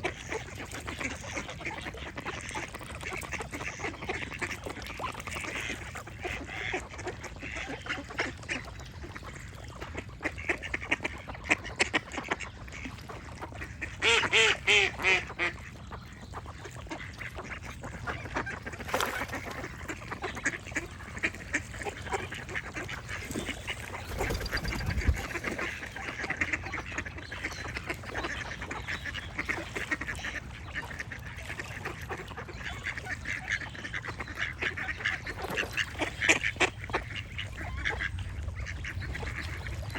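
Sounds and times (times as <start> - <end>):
ducks quacking: 0.0 - 39.9
songbirds singing: 20.2 - 30.9.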